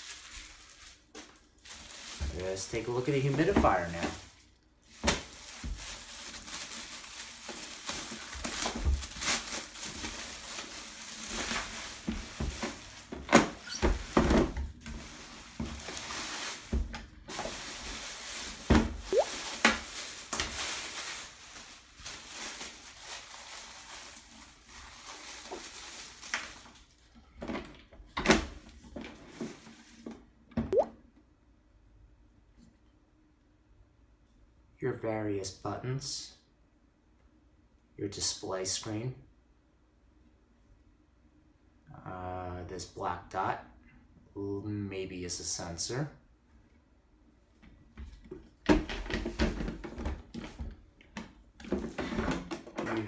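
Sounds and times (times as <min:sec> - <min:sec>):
packaging rustling and crinkling: 0:00.0 - 0:27.8.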